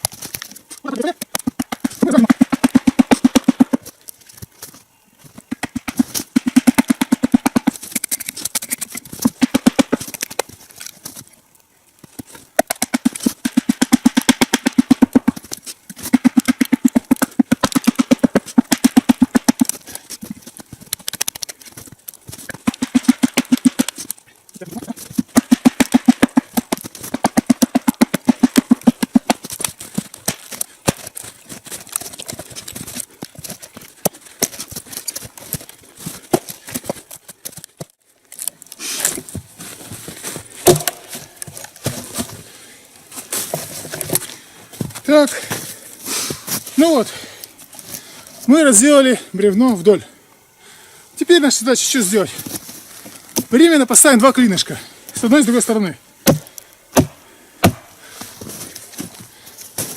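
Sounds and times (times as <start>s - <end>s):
sharp wooden knocks: 1.2s - 3.9s, 5.4s - 10.5s, 12.6s - 19.8s, 22.5s - 24.0s, 25.1s - 31.1s, 40.6s - 41.1s, 56.2s - 57.9s.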